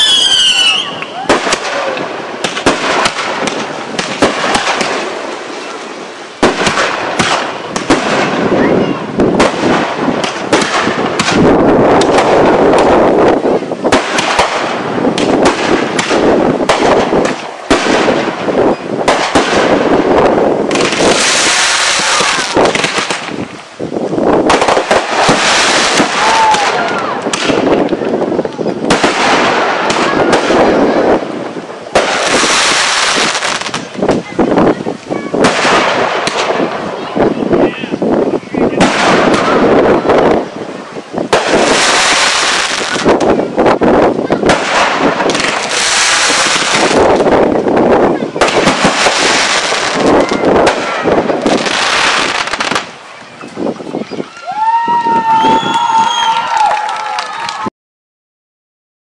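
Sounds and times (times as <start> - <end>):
firework whistle: 0.0 - 1.5, 54.3 - 56.8
hissing crackle: 0.0 - 54.3
fireworks bangs and crackling: 0.0 - 57.7.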